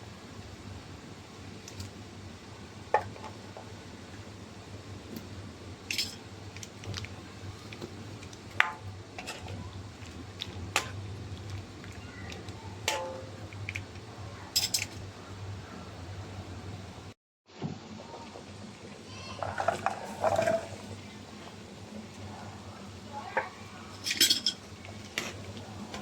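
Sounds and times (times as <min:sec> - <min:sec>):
utensils and cookware clinking: 0:05.9 - 0:06.2, 0:12.9 - 0:13.8, 0:14.5 - 0:15.0, 0:19.3 - 0:20.9, 0:23.2 - 0:25.4.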